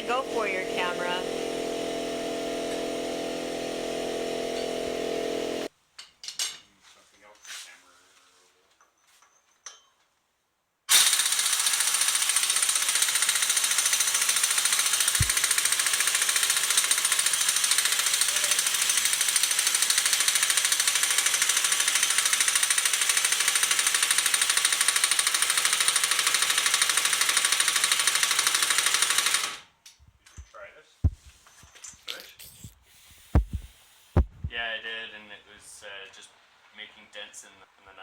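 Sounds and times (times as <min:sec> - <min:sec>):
impact tool hammering: 0:04.4 - 0:05.3, 0:15.1 - 0:16.0, 0:33.4 - 0:34.4.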